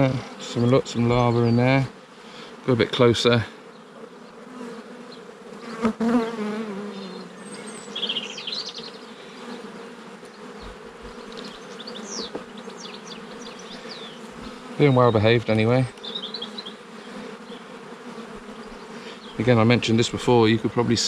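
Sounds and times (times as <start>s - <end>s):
bee buzzing past close: 0.0s - 21.0s
honeybees buzzing: 0.0s - 21.0s.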